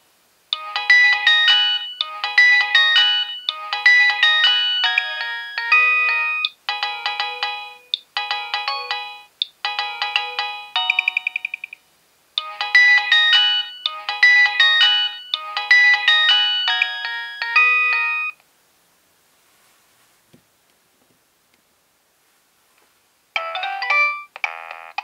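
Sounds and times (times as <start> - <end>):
phone polyphonic ringtone: 0.6 - 11.8, 12.4 - 18.4, 23.4 - 25.0.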